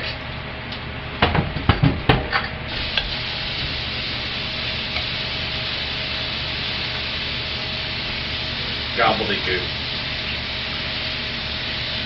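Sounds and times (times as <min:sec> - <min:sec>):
food sizzling in hot oil: 0:02.7 - 0:12.0.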